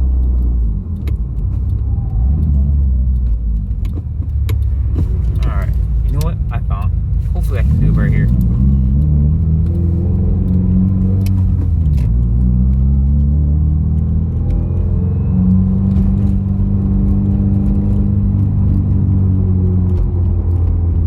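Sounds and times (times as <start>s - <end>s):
sharp clicks: 0.0s - 13.3s
car engine at light throttle: 0.0s - 21.0s
road rumble: 0.0s - 21.0s.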